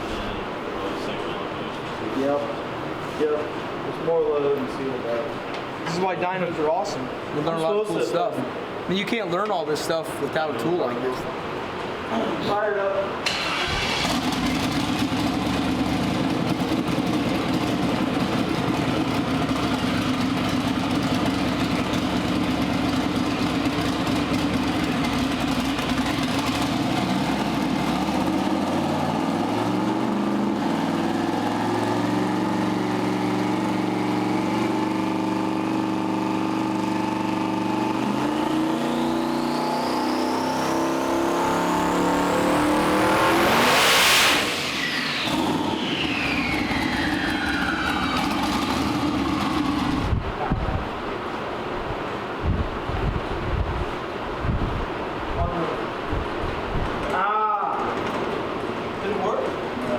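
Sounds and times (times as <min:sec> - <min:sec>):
engine revving on a dyno: 0:13.3 - 0:21.2, 0:23.1 - 0:50.2.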